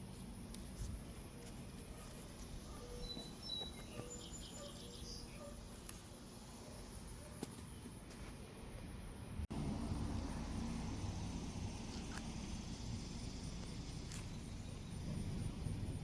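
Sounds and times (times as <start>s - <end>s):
low outdoor rumble: 0.0s - 16.0s
faint bird chirps: 2.6s - 5.6s.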